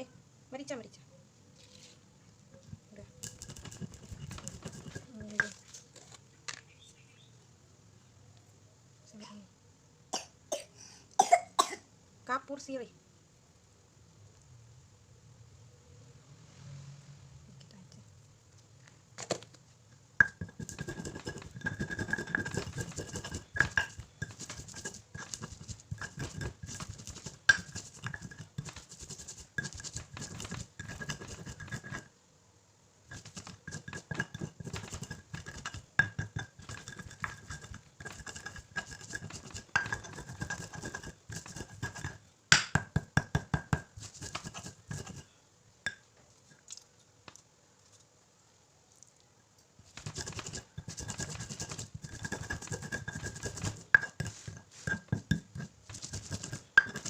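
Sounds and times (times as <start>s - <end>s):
pestle pounding in a mortar: 3.2s - 5.6s, 20.2s - 32.0s, 33.1s - 45.2s, 49.9s - 57.0s.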